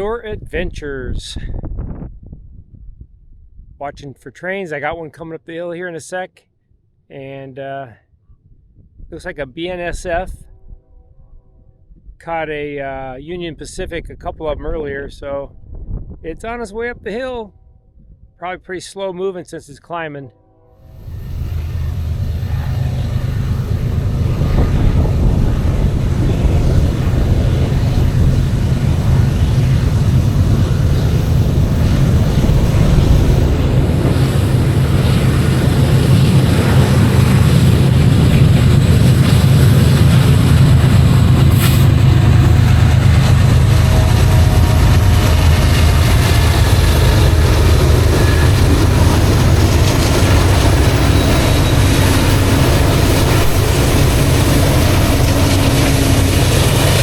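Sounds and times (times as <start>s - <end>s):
diesel locomotive engine rumble: 20.5s - 57.0s.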